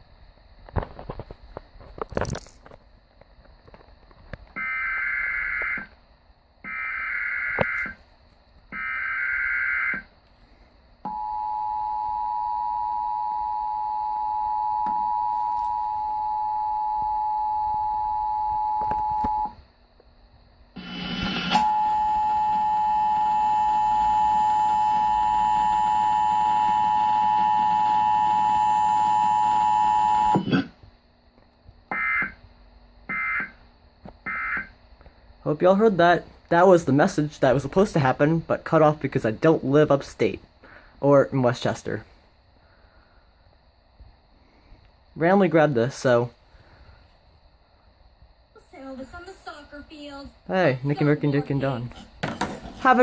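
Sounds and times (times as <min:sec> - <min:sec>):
two-tone attention signal: 0:11.1 - 0:19.6.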